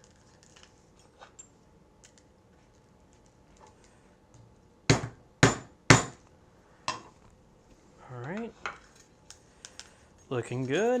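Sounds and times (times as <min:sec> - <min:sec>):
faint clicks of parts handled: 0:07.2 - 0:10.9.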